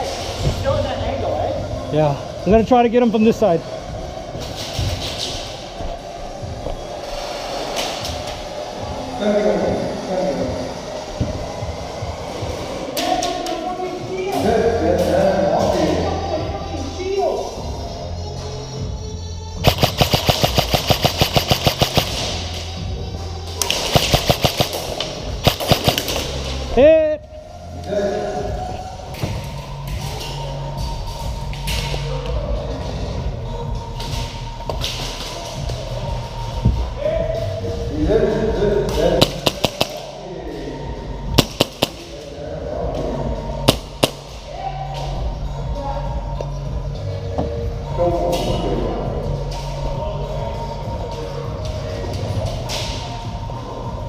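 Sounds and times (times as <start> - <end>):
airsoft gun automatic fire: 19.6 - 22.3, 23.8 - 26.3, 39.2 - 40.1, 41.4 - 42.1.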